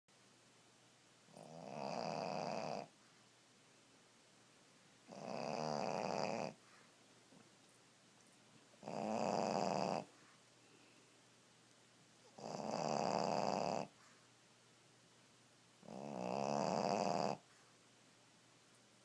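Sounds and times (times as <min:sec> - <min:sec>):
dog snoring: 0:01.3 - 0:03.0, 0:05.1 - 0:06.9, 0:08.7 - 0:10.3, 0:12.2 - 0:14.2, 0:15.8 - 0:17.6.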